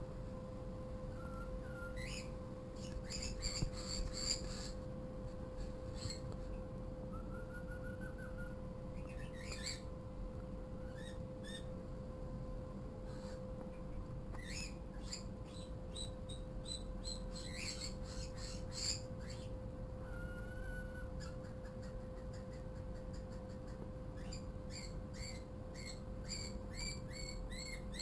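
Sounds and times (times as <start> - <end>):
faint steady hum: 0.0 - 28.0
birds chirping: 1.2 - 4.8, 5.6 - 6.3, 7.1 - 9.9, 14.4 - 28.0.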